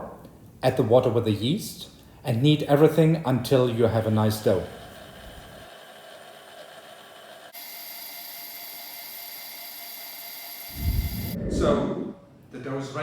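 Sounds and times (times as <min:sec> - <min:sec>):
kitchen mixer motor whirring: 0:04.0 - 0:11.4.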